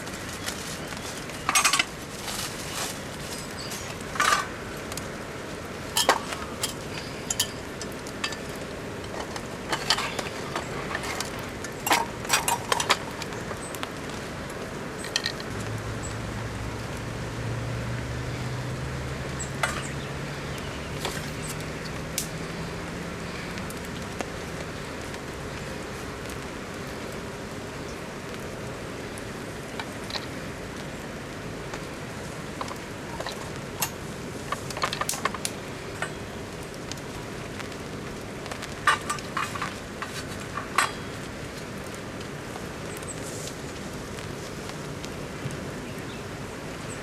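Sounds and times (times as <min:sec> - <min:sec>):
rain hiss: 0:00.0 - 0:47.0
metal cookware clinking: 0:01.5 - 0:01.9, 0:05.9 - 0:08.5, 0:11.8 - 0:13.0.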